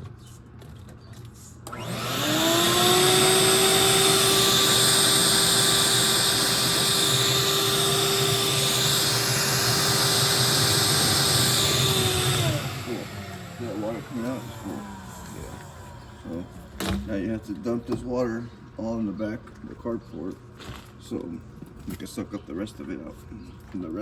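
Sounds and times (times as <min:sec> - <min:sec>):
shop vacuum motor whining: 0:01.6 - 0:17.7.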